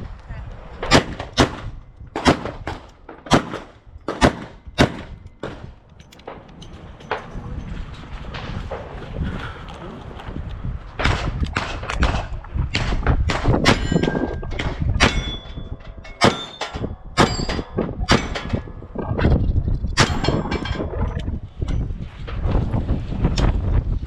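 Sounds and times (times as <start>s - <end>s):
steel targets ringing: 0.9s - 8.9s, 13.6s - 21.9s.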